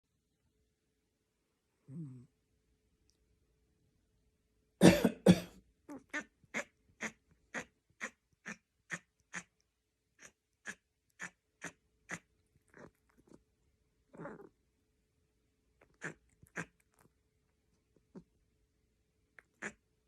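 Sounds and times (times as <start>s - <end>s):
person coughing: 4.8s - 5.6s.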